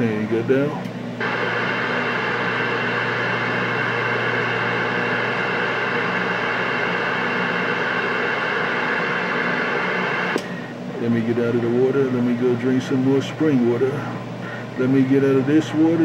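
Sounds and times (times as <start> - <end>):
radio static hiss: 8.1 - 10.4.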